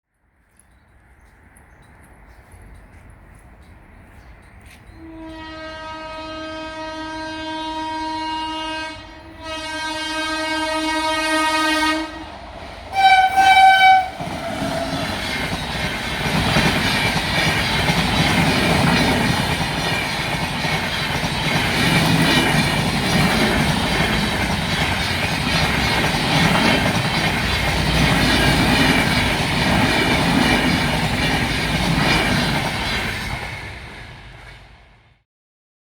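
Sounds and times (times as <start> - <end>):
train wheels on rails: 0.2 - 35.2
locomotive horn blasts: 5.0 - 12.3, 12.9 - 15.0.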